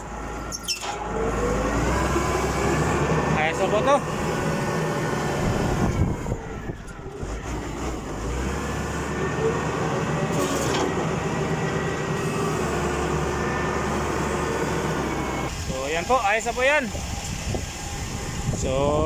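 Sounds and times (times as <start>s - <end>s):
diesel engine running: 0.0s - 19.0s.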